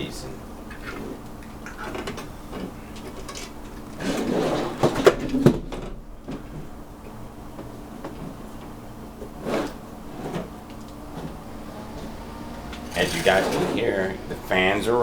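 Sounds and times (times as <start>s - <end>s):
cooling fans humming: 0.0s - 15.0s
knocks and rattles from handling: 0.7s - 6.8s.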